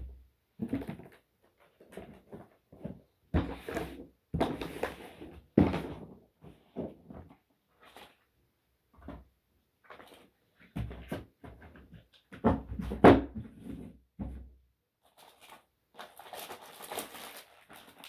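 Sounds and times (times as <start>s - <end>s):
boxes bumping and knocking: 12.4s - 14.5s.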